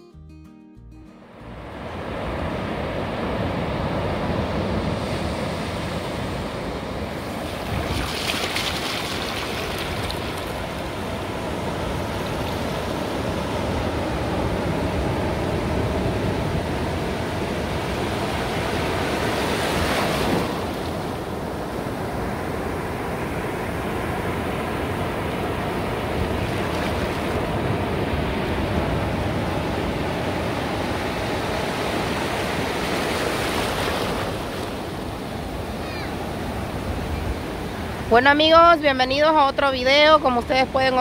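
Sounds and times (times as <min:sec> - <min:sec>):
ocean waves washing on beach: 0:01.4 - 0:41.0
waves breaking: 0:01.5 - 0:41.0.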